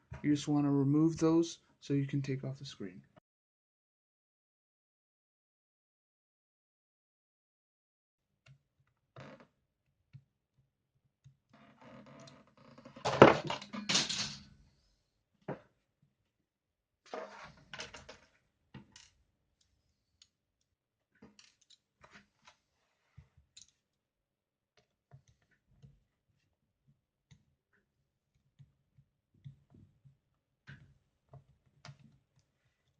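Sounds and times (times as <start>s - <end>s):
tools and parts clattering: 13.0s - 14.5s.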